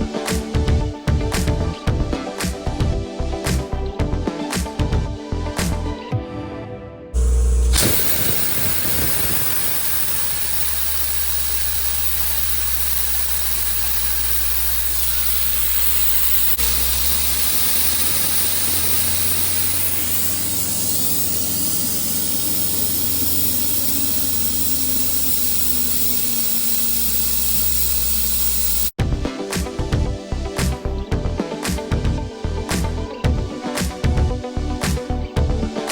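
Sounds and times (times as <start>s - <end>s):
abrasive blasting hiss: 7.2s - 29.0s
low hum: 7.2s - 29.0s.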